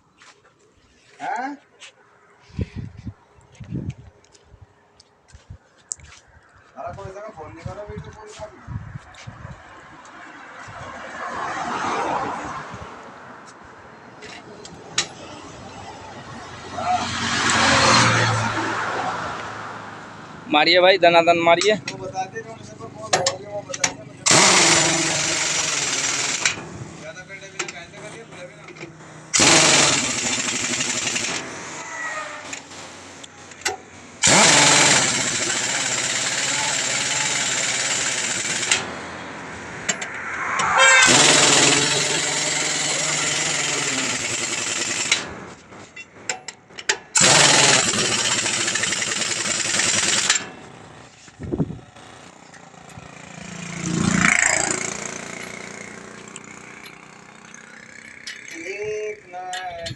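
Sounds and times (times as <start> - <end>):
pneumatic impact wrench: 23.8 - 27.0, 29.3 - 39.0, 40.6 - 51.2, 53.9 - 58.5.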